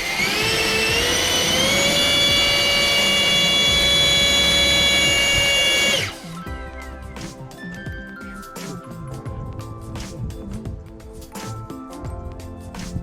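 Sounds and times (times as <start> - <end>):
electric ducted fan whining: 0.0 - 6.4.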